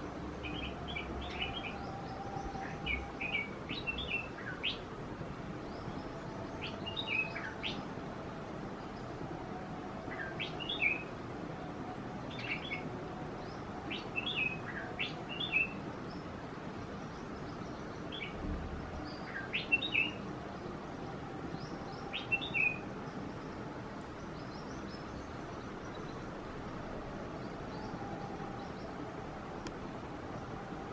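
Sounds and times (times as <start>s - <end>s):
birds chirping: 0.0s - 30.9s.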